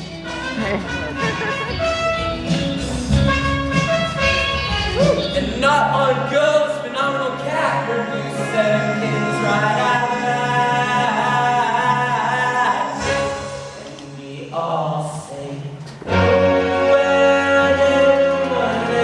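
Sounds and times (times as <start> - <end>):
musical accompaniment: 0.0 - 14.3, 15.7 - 19.0
voices singing with vibrato: 4.4 - 19.0.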